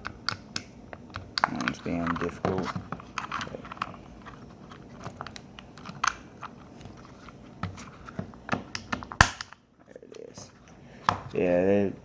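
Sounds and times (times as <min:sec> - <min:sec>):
plastic clicks and scrapes: 0:01.2 - 0:09.1.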